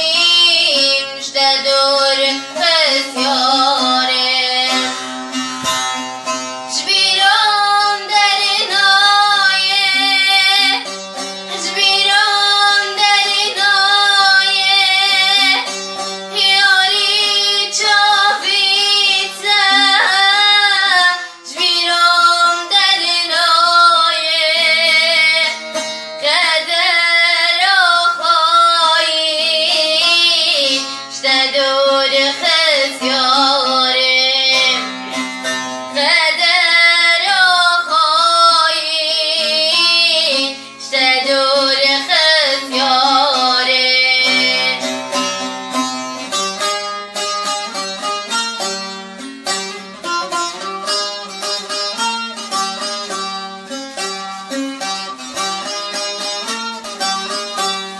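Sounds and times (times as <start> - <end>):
woman singing: 0.0 - 5.0, 6.7 - 10.9, 11.5 - 15.7, 16.3 - 34.9, 35.9 - 45.0
instrumental accompaniment: 0.0 - 57.9.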